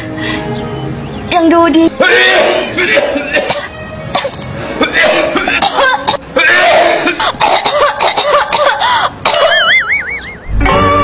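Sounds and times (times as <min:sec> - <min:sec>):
person coughing harshly: 0:02.8 - 0:09.7.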